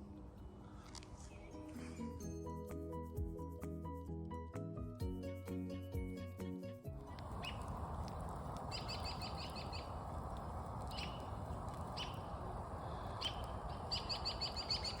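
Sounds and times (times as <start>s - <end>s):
small birds chirping: 7.1s - 15.0s
steady low background noise: 7.1s - 15.0s.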